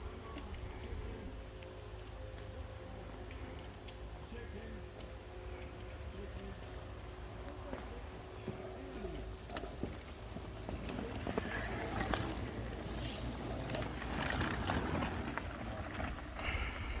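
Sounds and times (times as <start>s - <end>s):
tyres crunching over ground: 7.6s - 17.0s.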